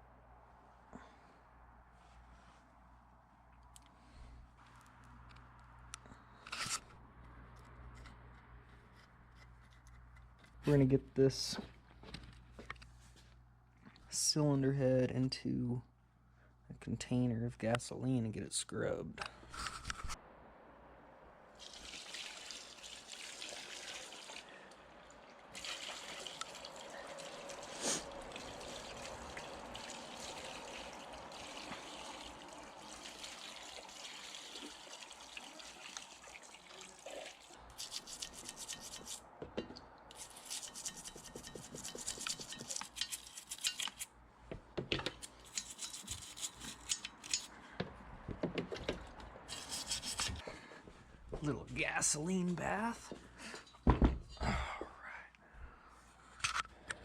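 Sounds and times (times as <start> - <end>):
liquid trickling and sloshing: 21.6 - 39.1
quick scrubbing strokes: 37.7 - 39.3, 40.1 - 44.1, 49.5 - 50.4.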